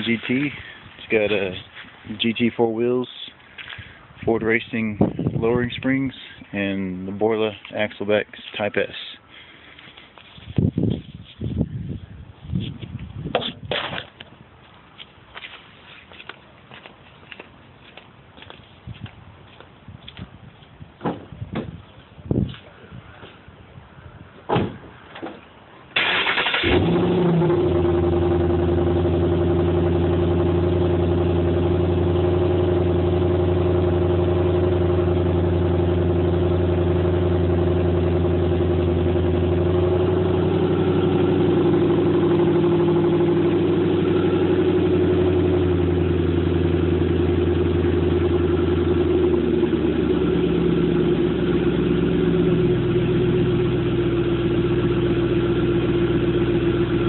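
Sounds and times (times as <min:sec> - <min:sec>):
car engine idling: 0:26.0 - 0:57.0.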